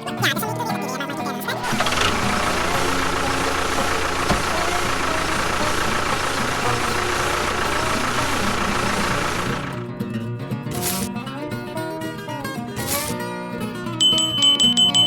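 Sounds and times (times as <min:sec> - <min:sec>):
motor running with whine: 0:01.6 - 0:09.8.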